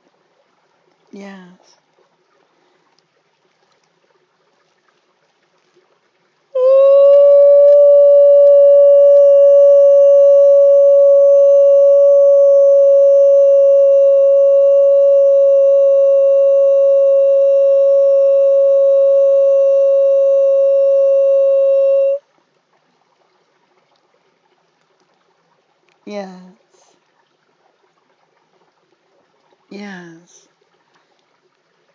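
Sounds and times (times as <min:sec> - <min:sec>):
long held note: 0:06.6 - 0:22.2.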